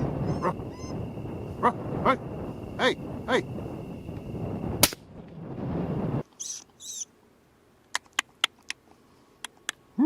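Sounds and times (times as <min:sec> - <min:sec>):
high squeaky calls: 0:00.0 - 0:01.0, 0:06.3 - 0:07.1
steady rushing noise: 0:00.0 - 0:06.4
rifle shot: 0:04.8 - 0:05.0.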